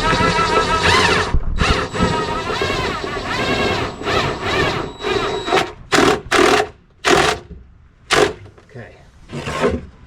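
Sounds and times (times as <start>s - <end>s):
drill driving screw into wood: 0.0s - 7.5s, 8.1s - 8.6s.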